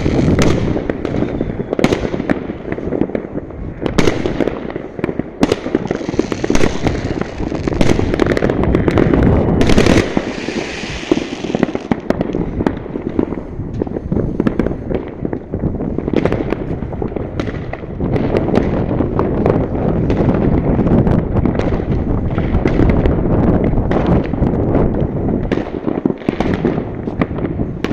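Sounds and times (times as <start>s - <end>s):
fireworks bangs and crackles: 0.0s - 27.9s.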